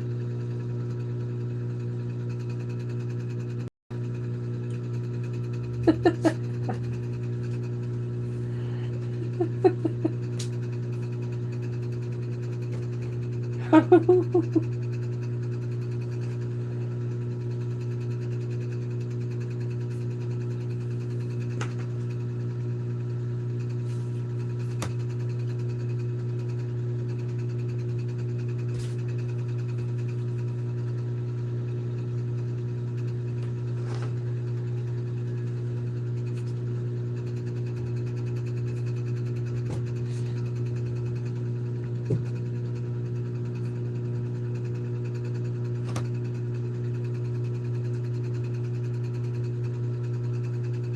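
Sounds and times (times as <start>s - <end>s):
low mechanical hum: 0.0s - 50.9s.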